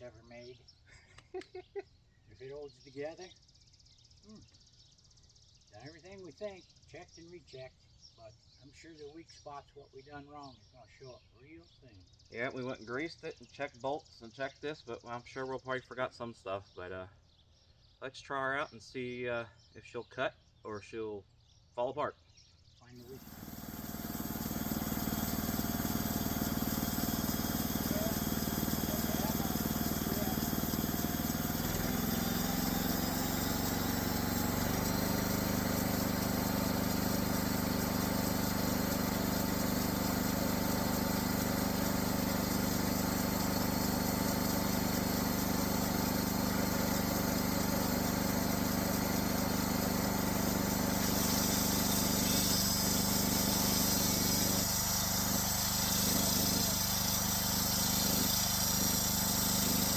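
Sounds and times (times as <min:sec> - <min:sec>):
band sawmill running: 0:23.1 - 0:59.9.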